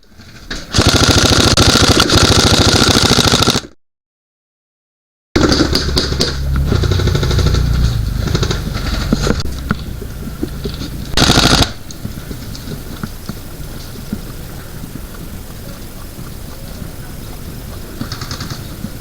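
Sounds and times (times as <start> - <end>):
airsoft guns firing: 0.5 - 3.7, 11.2 - 12.2
low rumbling noise: 5.4 - 19.0.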